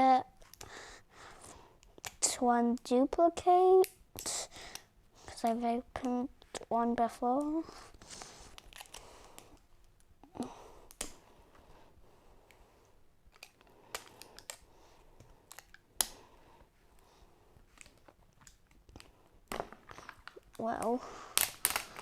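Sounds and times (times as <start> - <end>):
sharp plastic snaps: 1.8 - 2.9, 3.7 - 6.7, 10.8 - 11.2, 13.3 - 16.2, 17.7 - 22.0
plastic packaging clicks and taps: 17.8 - 22.0.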